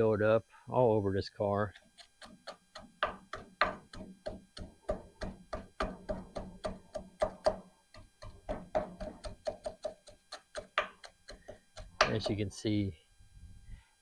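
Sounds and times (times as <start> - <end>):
tool knocking on caked grease: 2.2 - 12.4.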